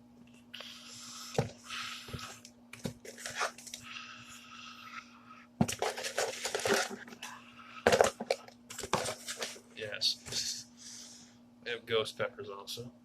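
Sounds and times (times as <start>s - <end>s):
faint steady hum: 0.0s - 13.0s
rustling and crinkling: 1.3s - 3.8s, 5.6s - 7.3s, 7.9s - 9.7s.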